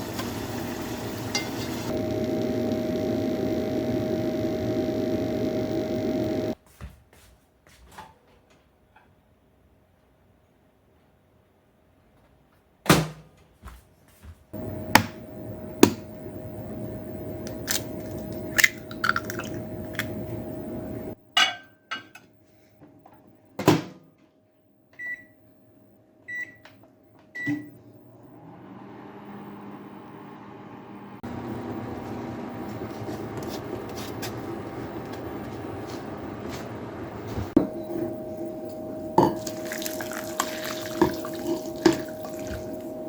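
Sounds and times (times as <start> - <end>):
microwave oven humming: 0.0 - 6.6, 14.6 - 21.3, 24.4 - 43.0
microwave click: 14.6 - 21.2.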